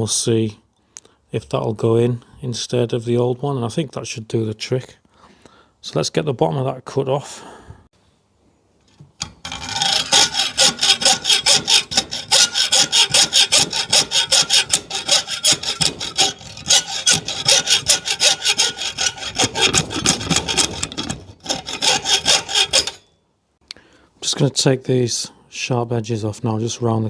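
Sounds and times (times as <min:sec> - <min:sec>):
hacksaw cutting metal: 0:09.2 - 0:23.1.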